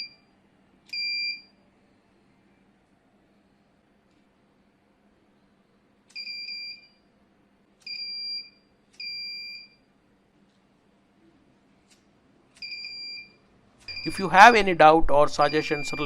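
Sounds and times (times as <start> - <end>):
fire alarm buzzer beeping: 0.0 - 0.3, 0.9 - 1.5, 6.1 - 7.1, 7.8 - 9.9, 12.6 - 14.7, 15.3 - 16.0.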